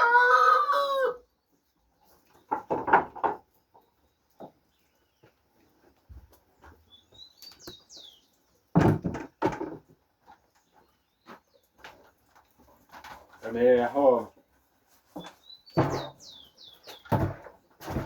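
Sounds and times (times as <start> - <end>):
chickens calling: 0.0 - 8.6
small birds chirping: 0.2 - 8.8, 9.6 - 17.8.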